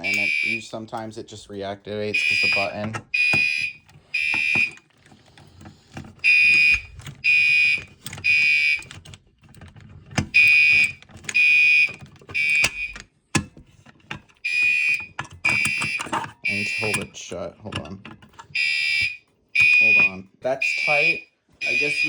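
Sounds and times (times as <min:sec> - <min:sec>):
fire alarm buzzing blasts: 0:00.0 - 0:00.7, 0:02.1 - 0:04.8, 0:06.2 - 0:08.9, 0:10.3 - 0:13.0, 0:14.4 - 0:17.1, 0:18.5 - 0:22.0.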